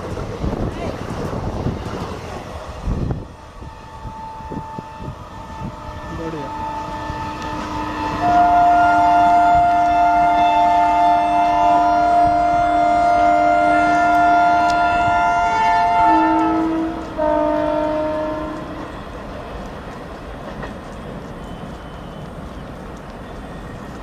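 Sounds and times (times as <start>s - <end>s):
train coaches clattering past: 0.0s - 24.0s
locomotive twin-tone horn: 3.3s - 19.0s.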